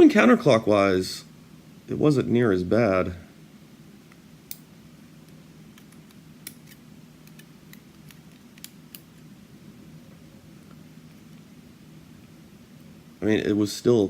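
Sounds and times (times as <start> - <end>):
faint steady hum: 0.0 - 14.0
metallic clicks of lock parts: 5.7 - 9.1.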